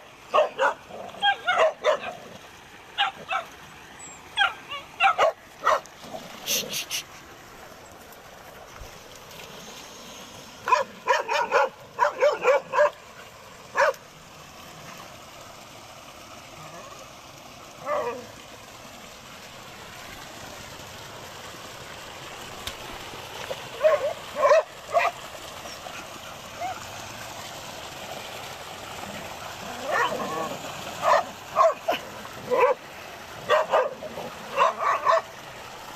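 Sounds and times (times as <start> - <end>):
animal yelping: 29.6 - 32.8.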